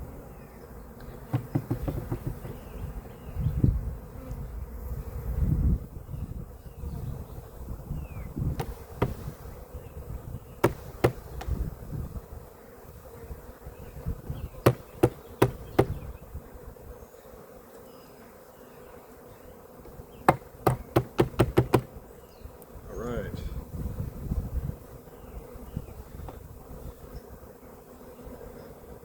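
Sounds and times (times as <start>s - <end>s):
bees buzzing: 0.0s - 29.0s
sharp knocks on bee package: 1.0s - 2.7s, 8.6s - 9.2s, 10.6s - 11.6s, 14.6s - 16.0s, 20.3s - 21.9s.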